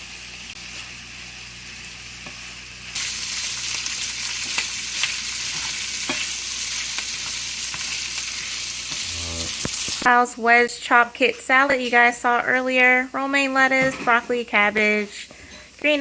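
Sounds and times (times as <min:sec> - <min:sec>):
shrimp sizzling in a pan: 0:00.0 - 0:10.1.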